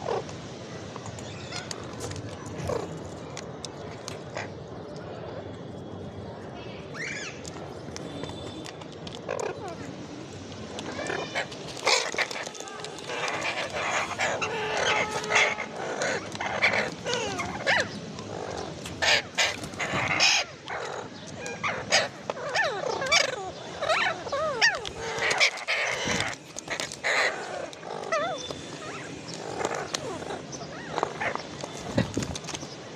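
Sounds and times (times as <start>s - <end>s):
parakeet squawking and chirping: 10.9s - 32.1s.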